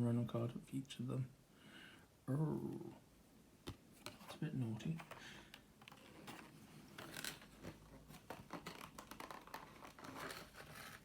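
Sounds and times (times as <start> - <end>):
cards and packaging rustling: 4.0 - 11.0.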